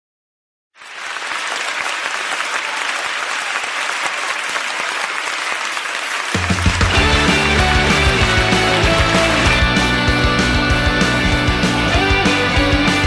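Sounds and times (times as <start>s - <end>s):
audience applauding: 0.8s - 10.1s.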